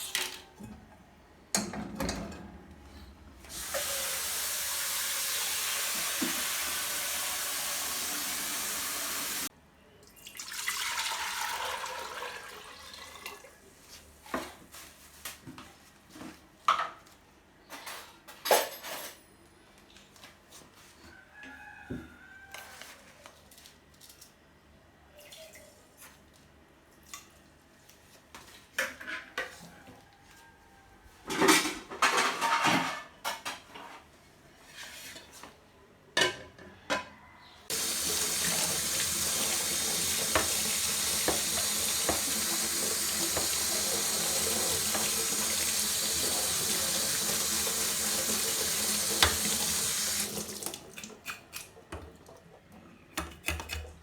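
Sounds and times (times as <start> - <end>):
pots and utensils clattering: 1.6 - 2.6, 31.3 - 34.0
water running from a tap: 3.5 - 9.5, 10.4 - 13.4, 37.7 - 51.1.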